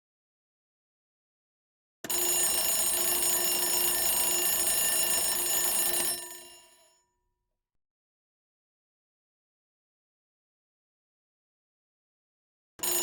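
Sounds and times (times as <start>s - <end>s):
electric alarm bell ringing: 2.1s - 6.9s.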